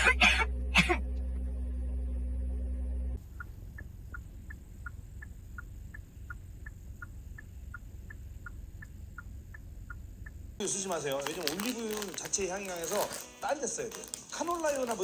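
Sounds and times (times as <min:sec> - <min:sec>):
steady low rumble: 0:00.0 - 0:10.6
rapid tick-tock ticking: 0:03.1 - 0:10.6.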